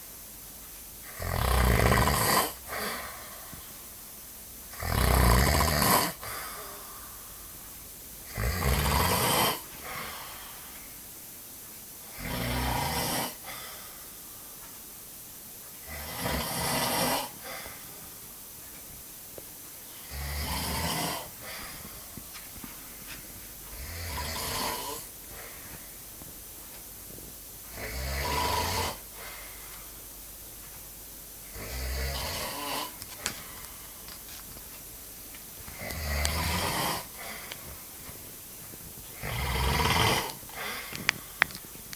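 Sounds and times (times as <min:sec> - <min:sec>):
heavy snoring: 0:01.0 - 0:03.6, 0:04.7 - 0:07.0, 0:08.2 - 0:10.6, 0:12.1 - 0:13.7, 0:15.8 - 0:18.0, 0:20.0 - 0:22.3, 0:23.7 - 0:25.8, 0:27.7 - 0:29.4, 0:31.4 - 0:33.3, 0:35.7 - 0:37.8, 0:39.1 - 0:41.5
soft breathing: 0:06.2 - 0:07.7, 0:09.6 - 0:11.1, 0:13.4 - 0:14.8, 0:17.2 - 0:20.1, 0:20.9 - 0:27.3, 0:28.9 - 0:30.1, 0:32.6 - 0:34.5, 0:36.6 - 0:41.9.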